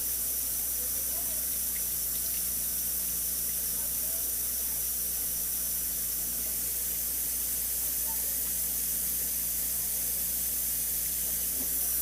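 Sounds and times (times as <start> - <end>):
tap water running into a glass: 0.0 - 12.0.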